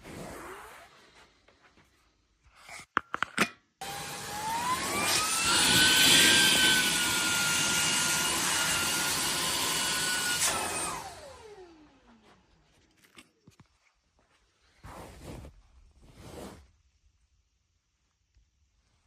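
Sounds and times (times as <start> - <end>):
vacuum cleaner whining: 3.8 - 12.5.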